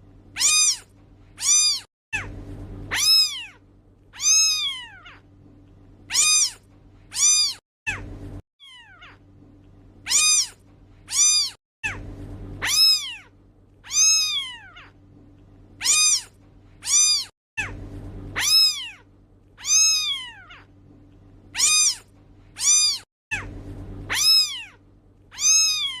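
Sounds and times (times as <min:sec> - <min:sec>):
steady low hum: 0:00.0 - 0:26.0
cat meowing: 0:00.4 - 0:02.3, 0:02.9 - 0:03.6, 0:04.2 - 0:05.3, 0:06.1 - 0:08.0, 0:08.6 - 0:09.2, 0:10.1 - 0:12.0, 0:12.6 - 0:15.0, 0:15.8 - 0:17.7, 0:18.3 - 0:19.0, 0:19.6 - 0:20.7, 0:21.6 - 0:23.5, 0:24.1 - 0:26.0.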